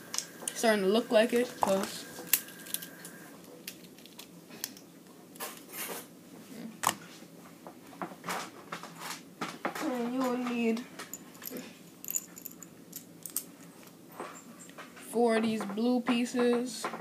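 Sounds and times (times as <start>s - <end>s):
plastic pieces rustling and clattering: 1.3s - 4.8s.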